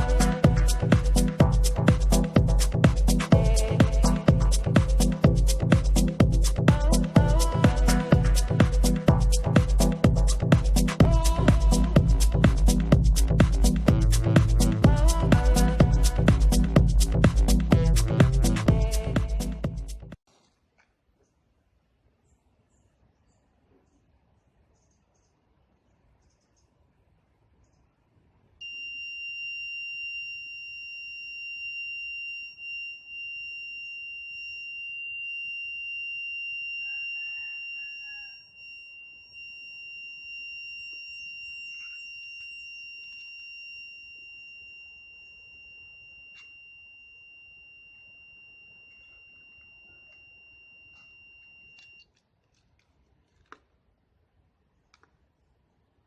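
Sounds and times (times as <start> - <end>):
high-pitched buzzer tone: 0.0 - 12.8, 28.6 - 52.1.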